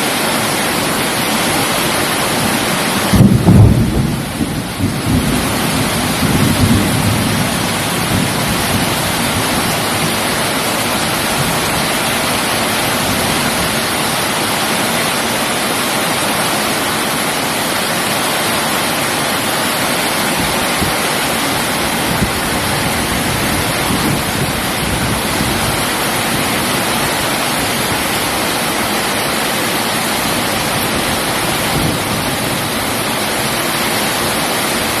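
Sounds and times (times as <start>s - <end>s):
heavy rain hissing: 0.0s - 35.0s
low thunder rumble: 3.1s - 10.4s.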